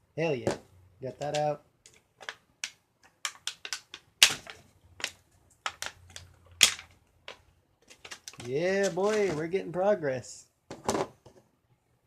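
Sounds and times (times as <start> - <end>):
plastic toy parts being handled: 0.4 - 9.8
plastic snaps: 1.2 - 9.4.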